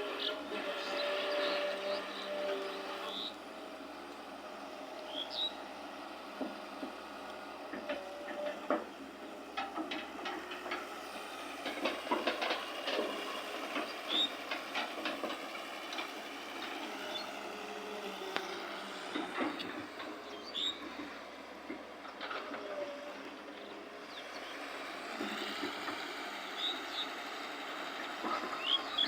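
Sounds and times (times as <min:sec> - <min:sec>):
excavator machine noise: 0:00.0 - 0:29.0
metallic clanks and knocks: 0:09.5 - 0:11.0.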